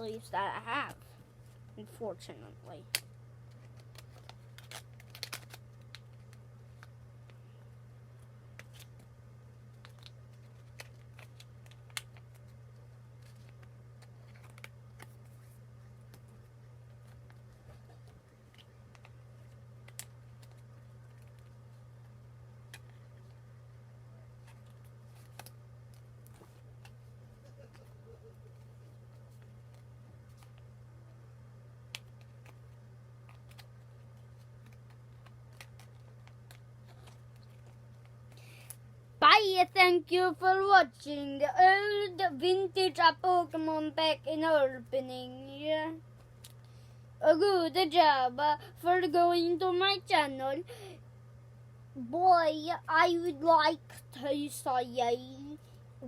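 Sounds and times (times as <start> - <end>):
steady low hum: 0.0 - 56.0
cards sliding into plastic sleeves: 2.9 - 7.4.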